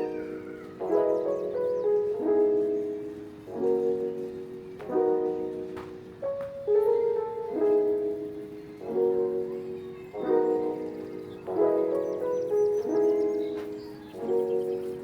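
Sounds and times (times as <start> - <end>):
slow piano chords: 0.0 - 15.0.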